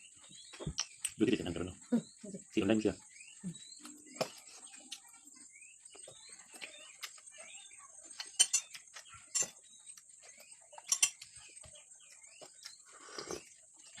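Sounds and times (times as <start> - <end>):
faint chirping: 0.0 - 14.0
cutlery clinking on a plate: 8.2 - 9.6, 10.8 - 11.3.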